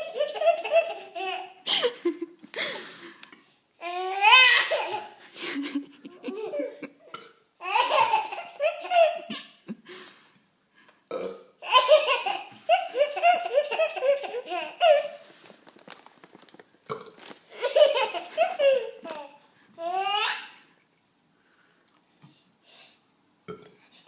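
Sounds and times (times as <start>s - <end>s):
person laughing: 0.0s - 3.3s, 5.3s - 7.0s
burps: 7.0s - 7.5s, 11.1s - 11.6s, 16.8s - 17.3s, 23.5s - 23.9s.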